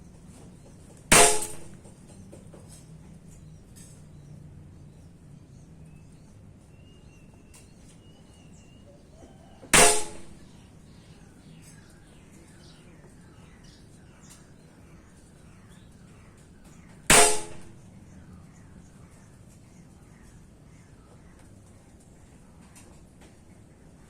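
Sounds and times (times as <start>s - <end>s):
air rifle shot: 1.1s - 1.8s, 9.7s - 10.4s, 17.1s - 17.7s.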